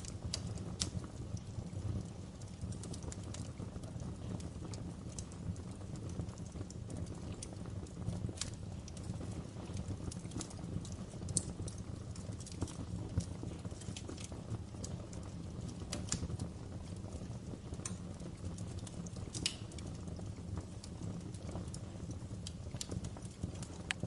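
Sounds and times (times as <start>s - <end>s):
wood fire crackling: 0.0s - 24.0s.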